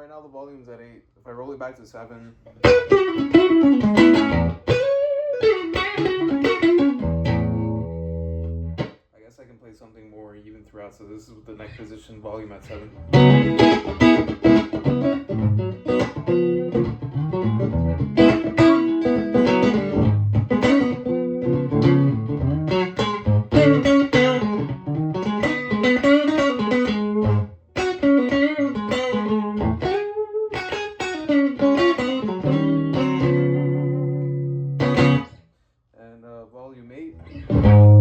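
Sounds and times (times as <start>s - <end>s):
electric guitar notes and chords: 2.6s - 8.9s, 12.9s - 35.4s, 37.2s - 38.0s.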